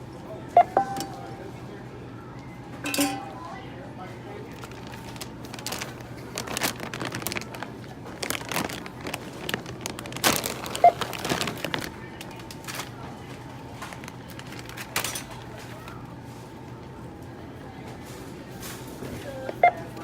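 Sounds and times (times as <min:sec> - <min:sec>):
short beep: 0:00.6 - 0:01.5
packaging crinkling and rustling: 0:04.5 - 0:16.0.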